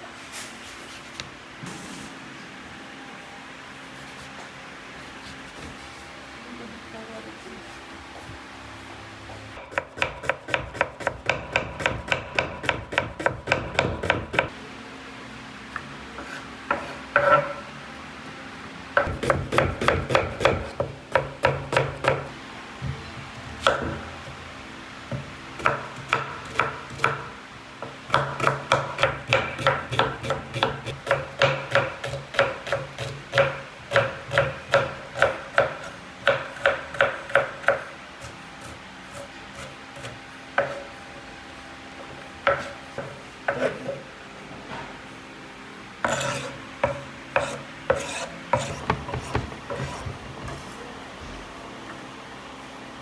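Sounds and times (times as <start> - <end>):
knife chopping on wooden board: 9.7 - 14.5, 16.2 - 17.6, 19.0 - 24.2, 25.1 - 40.9, 42.4 - 43.9, 46.0 - 50.8.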